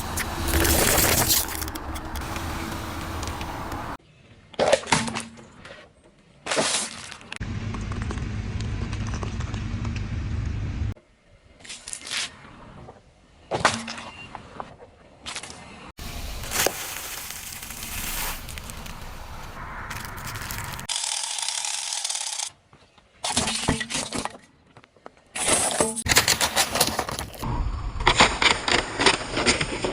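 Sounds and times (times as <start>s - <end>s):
car and tyres rumbling: 0.0s - 4.0s, 7.4s - 11.0s, 16.0s - 20.9s
objects cracking under wheels: 0.0s - 4.0s, 16.2s - 20.9s, 23.4s - 29.9s.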